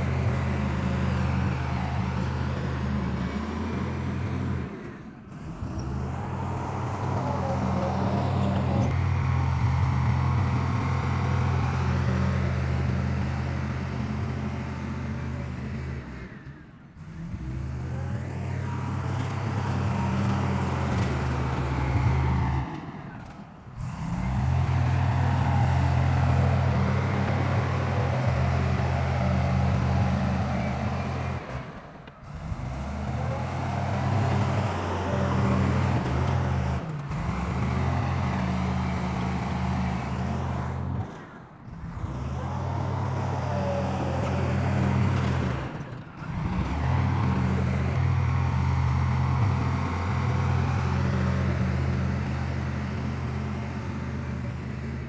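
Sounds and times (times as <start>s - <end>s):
diesel machinery engine drone: 0.0s - 55.0s.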